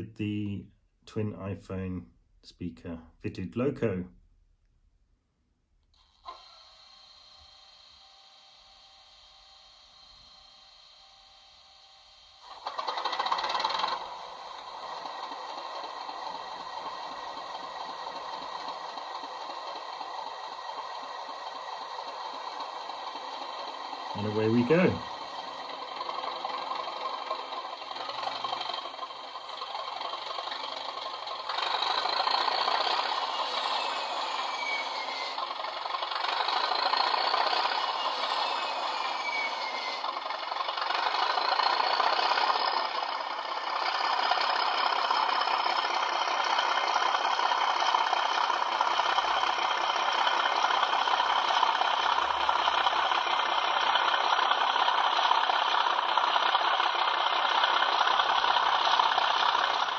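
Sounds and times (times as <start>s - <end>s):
diesel locomotive engine sound: 0.0s - 59.9s
whistling tones: 32.8s - 35.5s, 37.2s - 40.1s.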